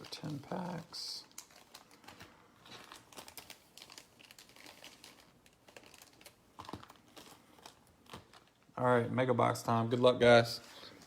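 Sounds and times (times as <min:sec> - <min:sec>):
wrappers crinkling: 0:00.0 - 0:08.8.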